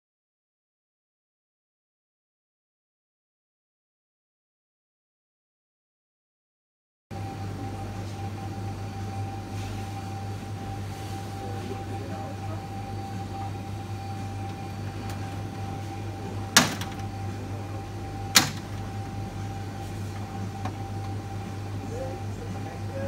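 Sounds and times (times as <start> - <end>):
air conditioner humming: 7.1 - 23.0.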